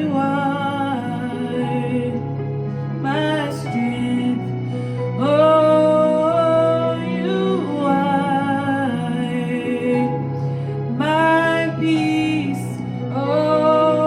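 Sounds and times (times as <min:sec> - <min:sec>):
soft instrumental worship music: 0:00.0 - 0:14.0.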